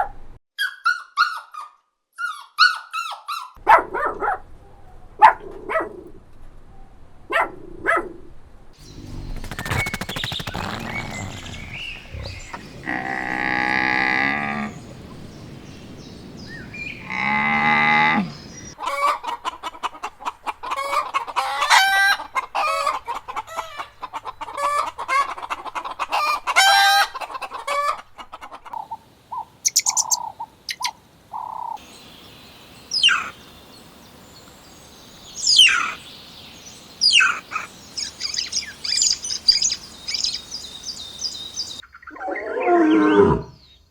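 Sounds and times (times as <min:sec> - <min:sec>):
high falling chick peeps: 0:08.8 - 0:13.4
hens clucking: 0:08.8 - 0:15.2.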